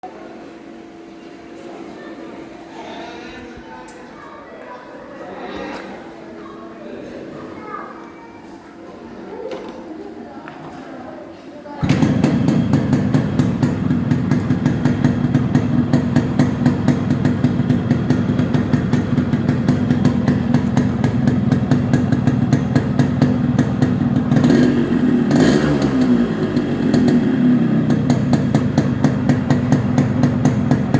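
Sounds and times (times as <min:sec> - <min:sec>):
motorcycle engine idling and revving: 0:11.8 - 0:30.9.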